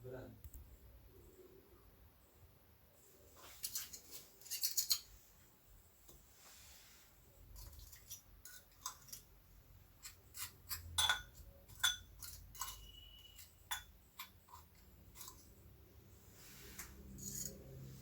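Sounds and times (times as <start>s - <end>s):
utensils tapping dishes: 10.0s - 15.6s, 16.8s - 17.8s
high steady tone: 12.7s - 13.6s.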